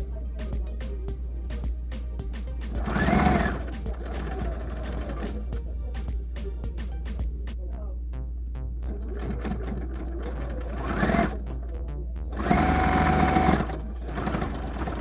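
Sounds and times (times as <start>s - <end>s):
sewing machine stitching: 2.6s - 5.5s, 8.9s - 15.0s.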